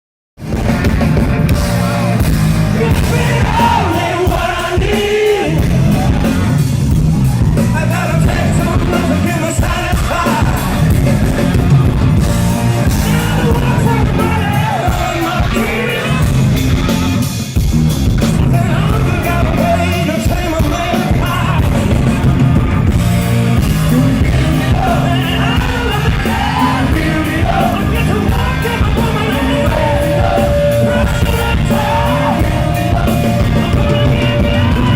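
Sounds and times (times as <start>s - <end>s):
live rock band: 0.4s - 34.9s
man singing: 2.7s - 6.4s, 7.6s - 11.6s, 12.8s - 16.4s, 18.4s - 22.2s, 23.8s - 34.9s.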